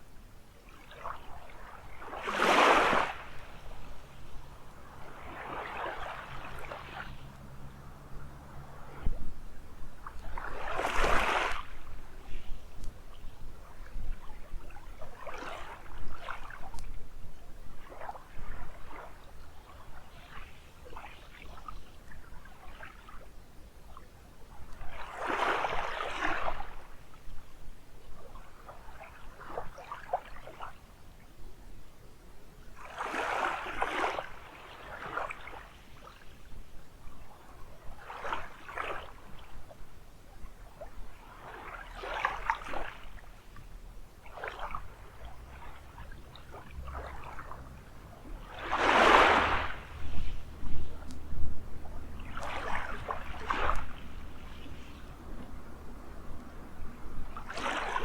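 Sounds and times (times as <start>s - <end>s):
small waves lapping on sandy beach: 0.0s - 58.0s.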